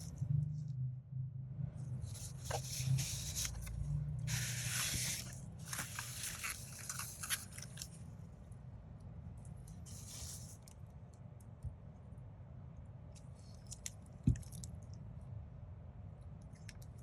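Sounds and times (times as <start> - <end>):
low steady hum: 0.0 - 17.0
packaging rustling and crinkling: 4.3 - 8.0.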